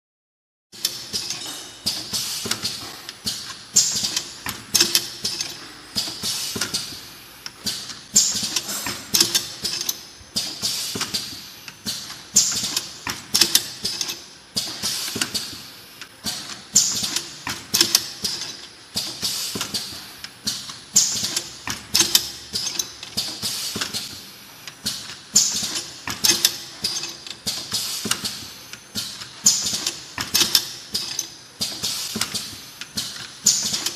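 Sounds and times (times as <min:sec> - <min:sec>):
capping machine clattering: 0:00.8 - 0:15.6, 0:24.8 - 0:33.9.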